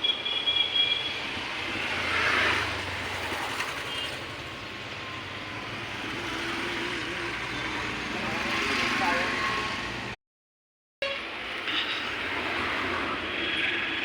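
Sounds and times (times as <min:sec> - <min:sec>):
low traffic hum: 0:00.0 - 0:10.2.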